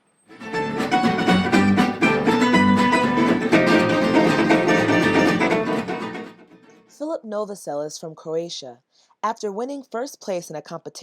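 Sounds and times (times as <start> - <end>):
plucked lute notes: 0.3 - 6.9.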